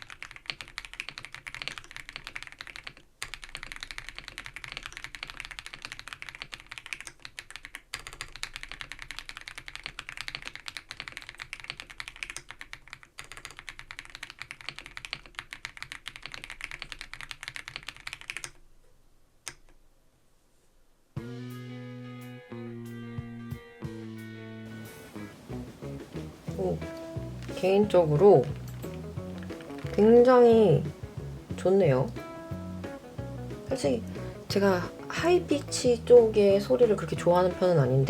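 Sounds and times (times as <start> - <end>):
fast mechanical keyboard typing: 0.0 - 18.6, 27.5 - 30.7
guitar music: 21.2 - 37.9.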